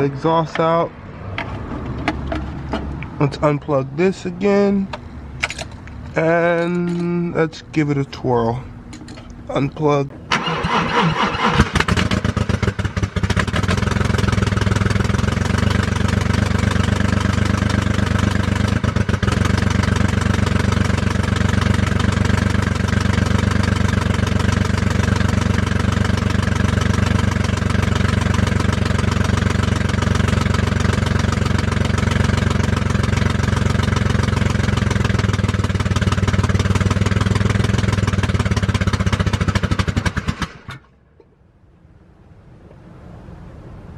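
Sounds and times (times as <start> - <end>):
starter cranking: 10.3 - 40.9
car engine running: 11.8 - 40.8.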